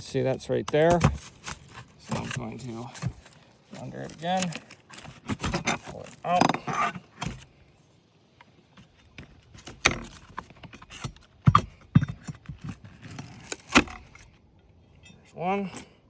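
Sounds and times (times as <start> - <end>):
pry bar scraping under shakes: 0.6 - 7.7, 8.7 - 14.4.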